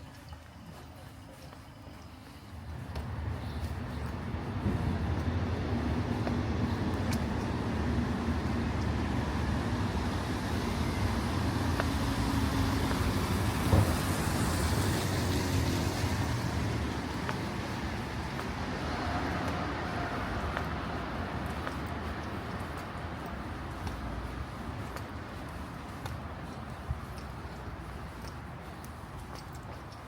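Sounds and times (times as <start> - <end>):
vehicle engine hum: 0.8 - 30.0
tyre hiss on wet road: 9.6 - 20.4.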